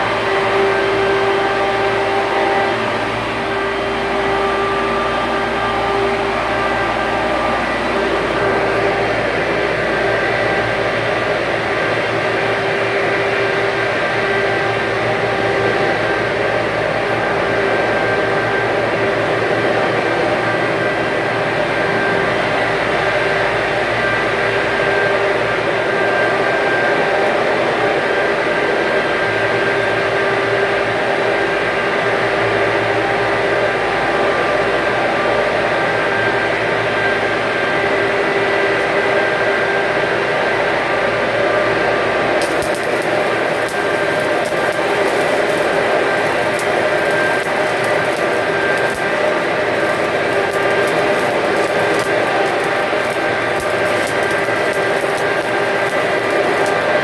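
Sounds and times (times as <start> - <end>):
steady hum: 42.4 - 57.0
welding arc crackling: 42.4 - 57.0.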